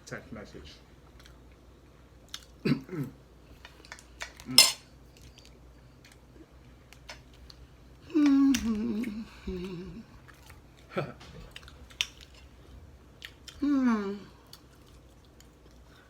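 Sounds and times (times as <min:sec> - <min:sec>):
cutlery clinking on plates: 0:04.6 - 0:04.8
person humming: 0:08.0 - 0:10.2, 0:13.6 - 0:14.4.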